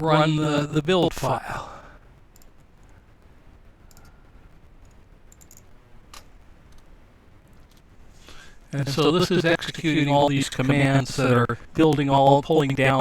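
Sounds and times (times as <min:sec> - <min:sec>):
low room hum: 0:00.0 - 0:13.0
computer keyboard keystrokes: 0:04.8 - 0:05.7.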